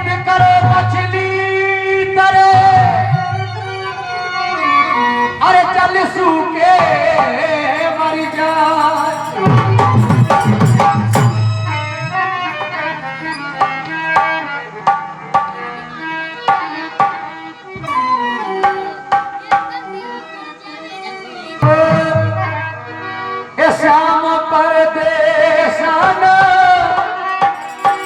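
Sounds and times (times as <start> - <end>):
hand-drum strokes: 6.8 - 12.9, 26.2 - 28.0
sustained melody: 7.6 - 13.6, 17.5 - 21.6, 27.3 - 28.0.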